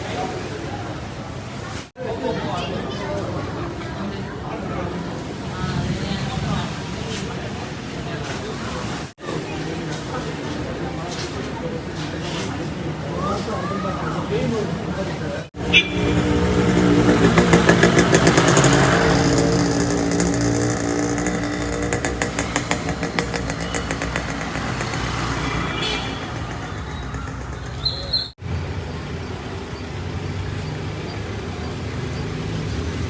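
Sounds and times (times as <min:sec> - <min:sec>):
vehicle engine running: 0:15.6 - 0:33.0.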